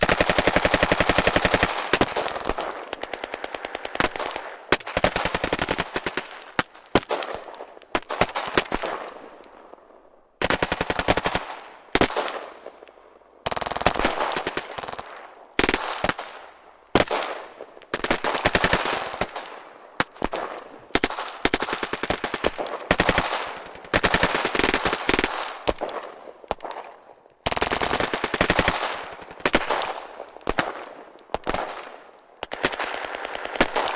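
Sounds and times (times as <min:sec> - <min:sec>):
automatic gunfire bursts: 0:00.0 - 0:09.1, 0:20.2 - 0:26.8, 0:27.4 - 0:33.9.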